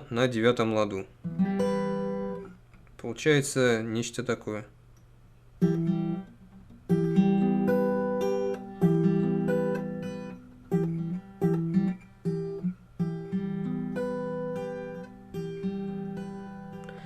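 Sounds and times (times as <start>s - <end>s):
acoustic guitar fingerpicked: 1.2s - 2.8s, 5.6s - 17.0s.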